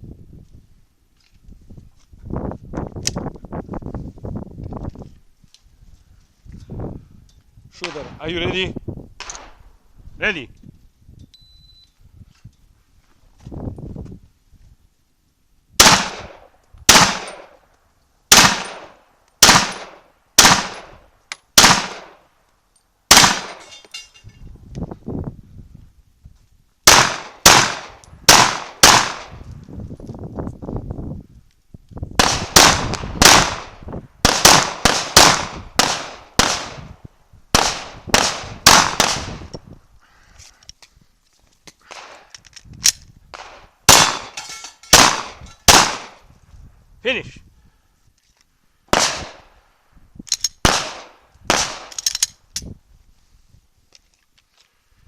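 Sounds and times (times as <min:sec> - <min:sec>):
pistol shots: 0:15.8 - 0:17.6, 0:18.3 - 0:21.0, 0:21.6 - 0:22.2, 0:23.1 - 0:23.7, 0:26.9 - 0:29.4, 0:32.2 - 0:36.9, 0:37.5 - 0:39.5, 0:43.3 - 0:46.2, 0:48.9 - 0:49.4, 0:50.6 - 0:52.0.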